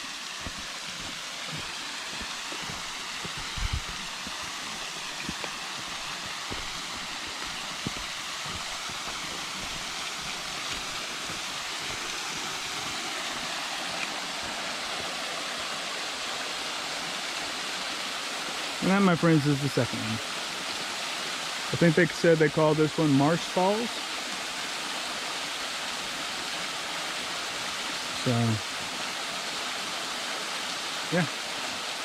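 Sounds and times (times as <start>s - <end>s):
waterfall rushing into pool: 0.0s - 32.0s
faint low bumps: 2.2s - 9.9s.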